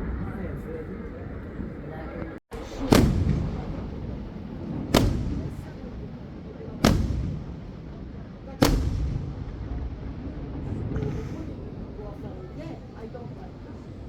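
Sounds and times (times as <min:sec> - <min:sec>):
fireworks bangs: 0:02.5 - 0:13.8.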